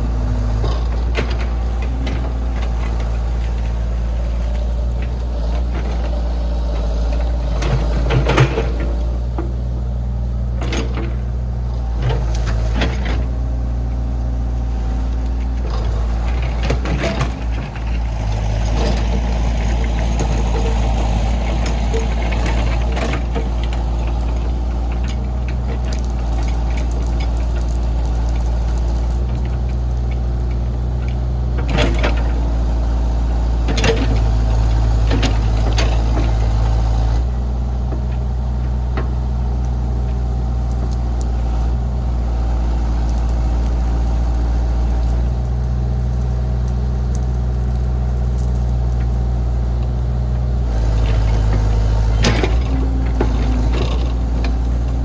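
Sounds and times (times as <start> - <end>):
diesel engine running: 0.0 - 55.0
metal clanks and knocks: 50.9 - 55.0.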